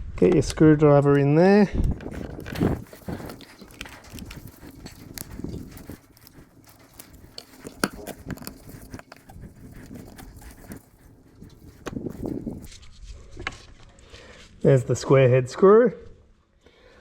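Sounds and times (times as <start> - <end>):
screwdriver scraping screw: 1.9 - 12.7.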